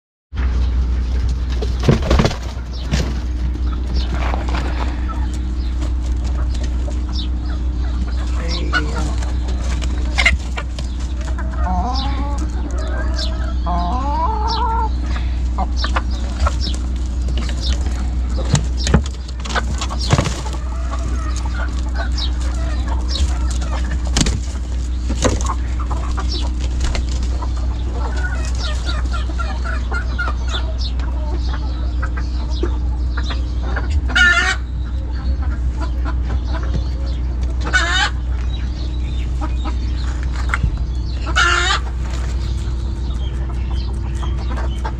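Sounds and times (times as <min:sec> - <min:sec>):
chickens clucking: 0:00.4 - 0:44.9
steady low hum: 0:00.4 - 0:44.9
loud short chicken calls: 0:41.2 - 0:42.0.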